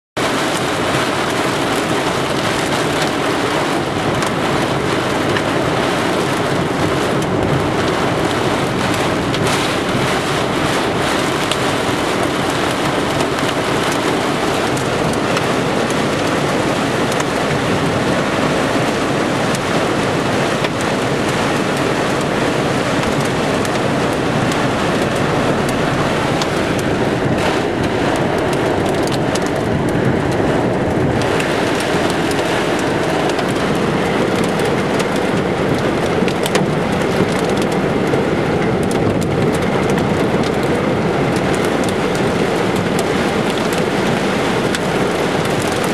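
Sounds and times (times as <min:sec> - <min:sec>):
heavy rain on a car: 0:00.2 - 0:45.9.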